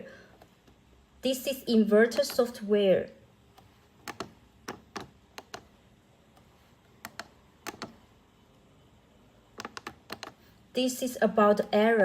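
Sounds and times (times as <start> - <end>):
keypad button clicks: 2.0 - 2.6, 3.6 - 5.7, 7.0 - 8.0, 9.6 - 10.4.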